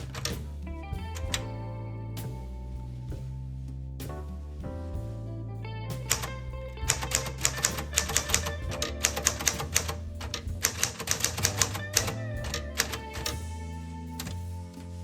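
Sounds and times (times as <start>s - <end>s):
background music: 0.0s - 15.0s
manual typewriter typing: 6.9s - 13.3s.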